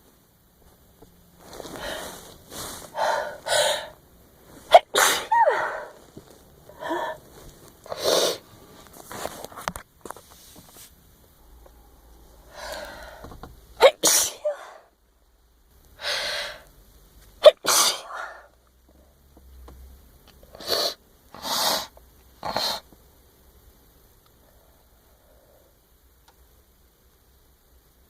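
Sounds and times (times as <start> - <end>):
drawn-in breath: 1.5 - 4.0, 6.7 - 8.4, 11.9 - 13.4
woman sneezing: 4.7 - 6.0, 13.8 - 14.9, 17.4 - 18.4.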